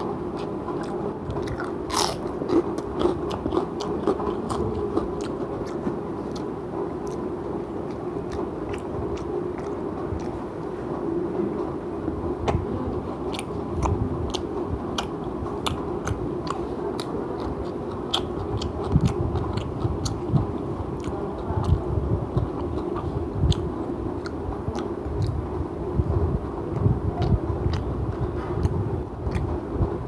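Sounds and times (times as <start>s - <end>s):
person chewing food: 0.0s - 10.8s, 13.2s - 25.4s, 26.7s - 29.6s
mouth and teeth clicks: 7.8s - 10.4s, 13.3s - 25.4s, 26.7s - 29.6s.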